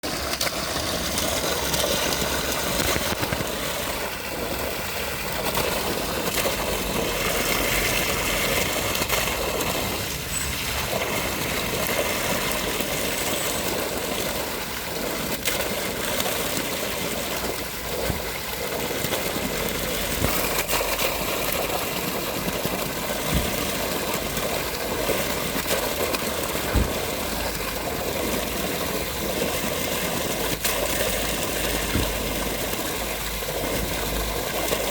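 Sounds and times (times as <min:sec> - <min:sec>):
water rushing: 0:00.0 - 0:34.9
dull low thumps: 0:26.7 - 0:27.2.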